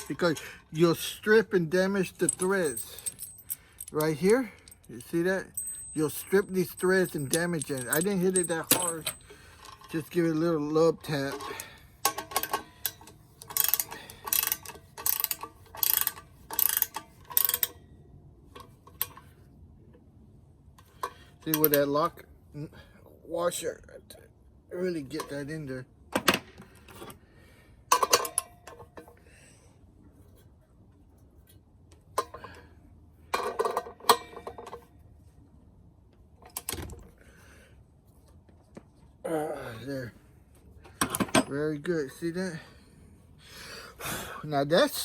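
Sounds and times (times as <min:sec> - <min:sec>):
metal tool clinking on bolt: 0:02.0 - 0:10.2
ratchet wrench ratcheting: 0:13.4 - 0:17.7.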